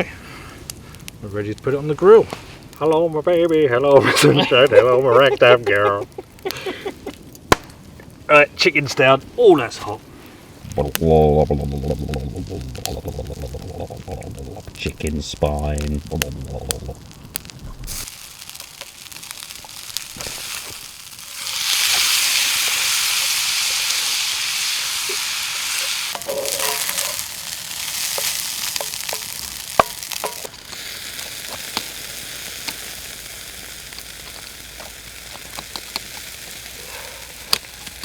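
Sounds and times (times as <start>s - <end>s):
chicken sizzling on a grill: 0.0s - 7.2s, 8.6s - 38.0s
sharp fat pops: 7.4s - 7.8s.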